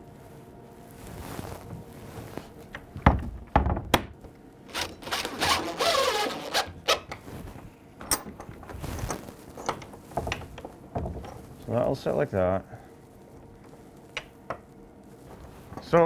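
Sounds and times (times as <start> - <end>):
metal scraping on wood: 4.7 - 7.1.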